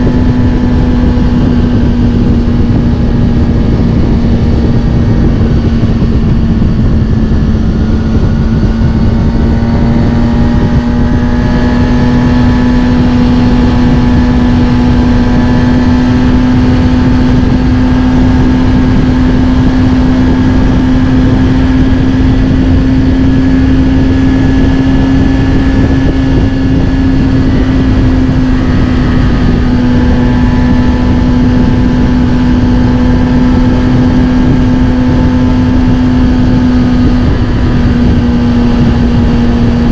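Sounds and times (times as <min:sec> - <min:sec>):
motorcycle engine cruising: 0:00.0 - 0:39.9
wind noise: 0:00.0 - 0:39.9.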